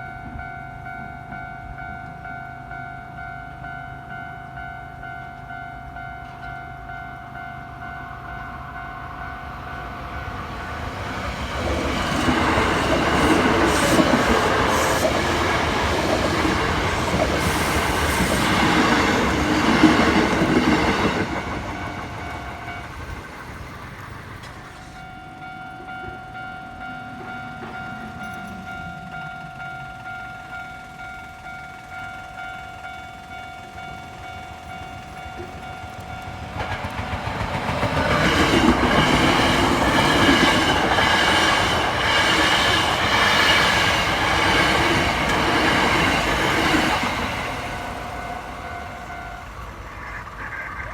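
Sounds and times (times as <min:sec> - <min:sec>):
level-crossing warning bell: 0:00.0 - 0:50.9
train wheel clatter: 0:10.7 - 0:50.9.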